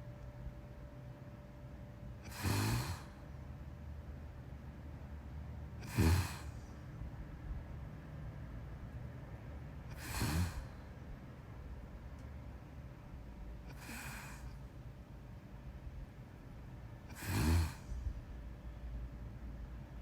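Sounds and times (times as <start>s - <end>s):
breathy exhale: 2.3s - 3.2s, 5.8s - 6.8s, 9.9s - 10.8s, 13.7s - 14.6s, 17.1s - 18.1s
person snoring: 2.3s - 3.2s, 5.8s - 6.6s, 9.9s - 10.7s, 13.7s - 14.5s, 17.1s - 17.9s.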